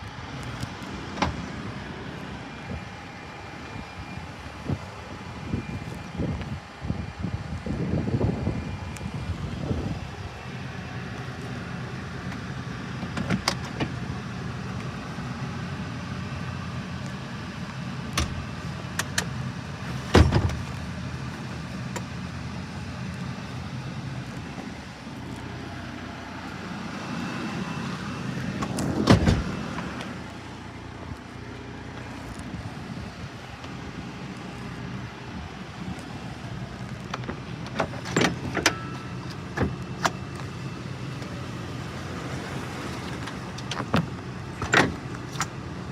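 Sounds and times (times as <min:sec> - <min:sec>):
car engine idling: 0:00.0 - 0:45.9.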